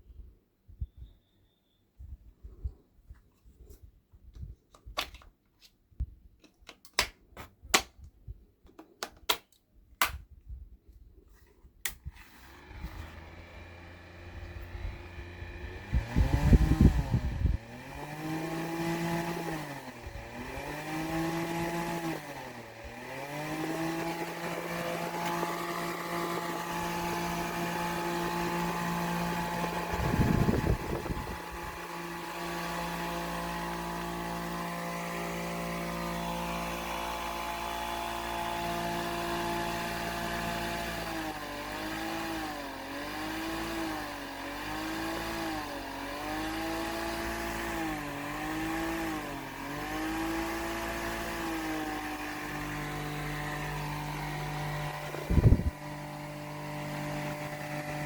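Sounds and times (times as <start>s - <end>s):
electric fan motor whining: 12.0s - 58.0s.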